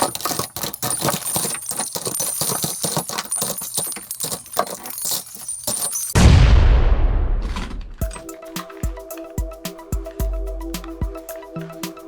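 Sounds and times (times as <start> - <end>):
small hard objects rattling: 0.0 - 6.2.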